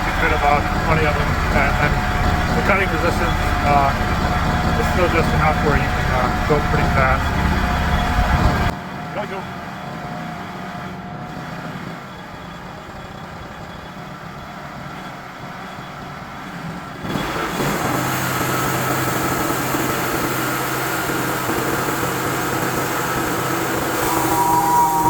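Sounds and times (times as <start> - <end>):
saw blade cutting boards: 0.0 - 8.7, 17.2 - 25.0
sawmill engine running: 0.0 - 25.0.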